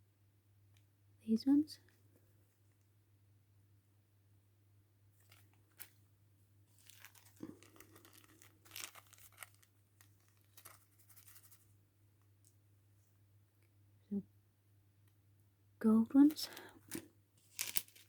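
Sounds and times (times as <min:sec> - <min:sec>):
plastic bags crinkling: 0:06.7 - 0:11.6, 0:16.3 - 0:18.0.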